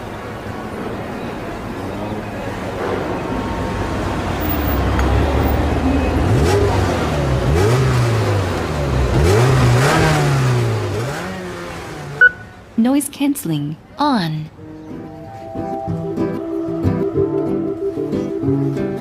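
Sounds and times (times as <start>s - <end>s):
vehicle engines revving: 0.0s - 12.8s
road noise rumble: 0.0s - 16.8s.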